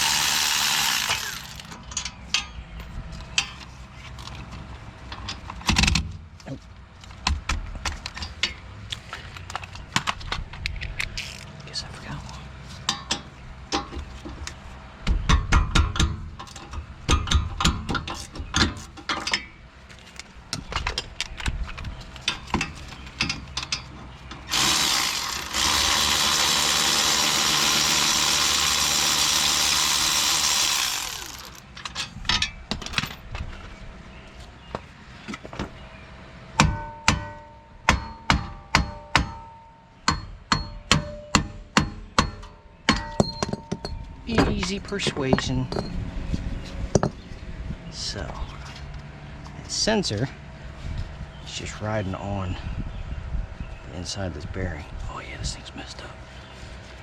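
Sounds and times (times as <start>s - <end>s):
power tool running: 0.0s - 1.7s, 24.5s - 31.6s.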